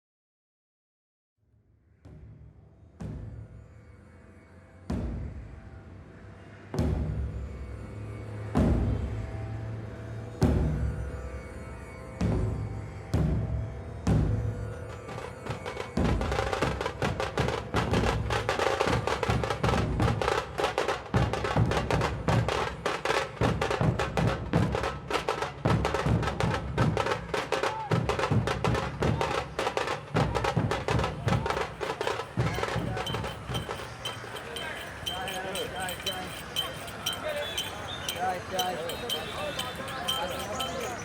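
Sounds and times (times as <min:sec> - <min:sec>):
fast drum strokes: 0:15.1 - 0:41.0.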